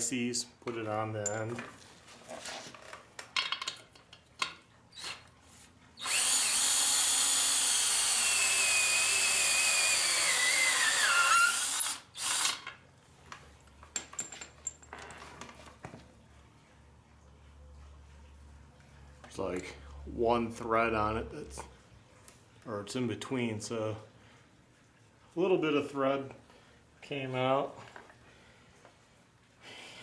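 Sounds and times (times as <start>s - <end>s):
power drill whining: 5.0s - 5.2s, 6.0s - 12.7s.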